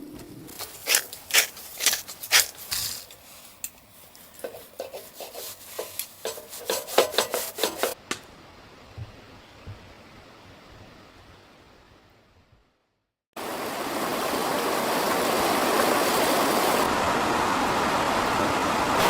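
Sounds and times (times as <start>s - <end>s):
hard objects scraping and clicking: 0.5s - 8.0s.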